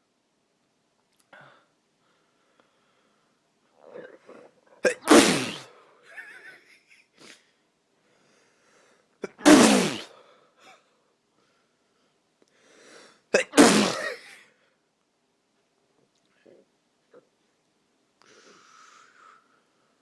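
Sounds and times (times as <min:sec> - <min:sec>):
faint breaths: 0:01.3 - 0:04.9, 0:07.2 - 0:09.2, 0:10.1 - 0:13.3, 0:18.2 - 0:20.0
man sneezing: 0:04.8 - 0:05.8, 0:09.2 - 0:10.2, 0:13.4 - 0:14.2.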